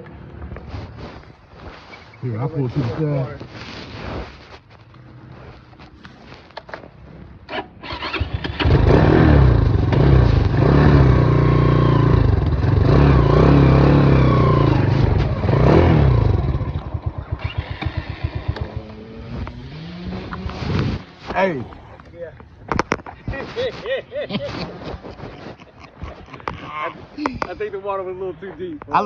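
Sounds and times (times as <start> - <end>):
off-road vehicle engine revving: 7.9 - 21.0.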